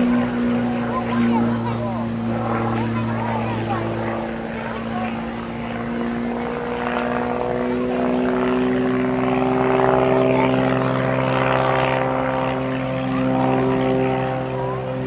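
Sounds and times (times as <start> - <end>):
propeller plane engine droning: 0.0 - 15.0.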